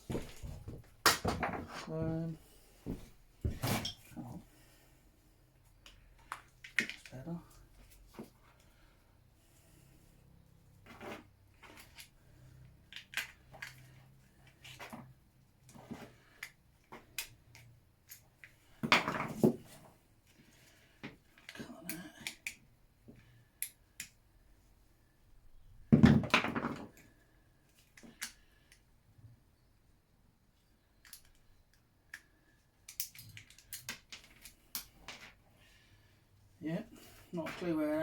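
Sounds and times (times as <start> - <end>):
tools and parts clinking: 3.4 - 4.2, 5.8 - 7.3.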